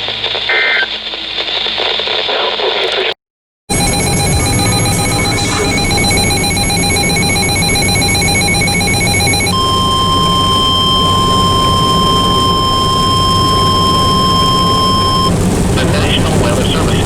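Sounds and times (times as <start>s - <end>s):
steady alarm tone: 3.7s - 15.7s
rapidly pulsing electronic tone: 3.7s - 17.0s.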